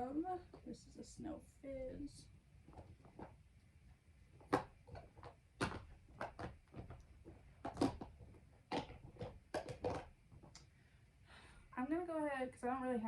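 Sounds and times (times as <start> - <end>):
plastic containers clacking: 4.4 - 10.7.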